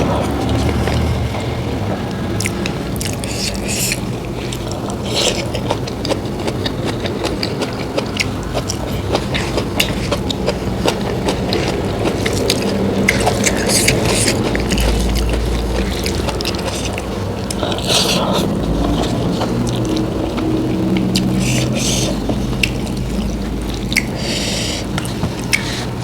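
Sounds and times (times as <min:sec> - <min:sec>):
low hum: 0:00.0 - 0:05.0
person chewing food: 0:00.0 - 0:26.0.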